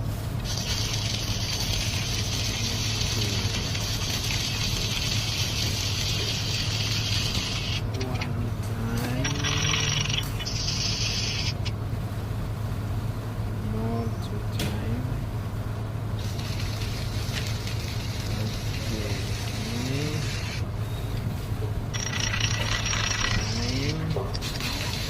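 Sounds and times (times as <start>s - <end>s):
steady low hum: 0.0s - 25.0s
electric arc welding crackling: 0.4s - 8.0s, 9.0s - 11.7s, 16.2s - 20.6s.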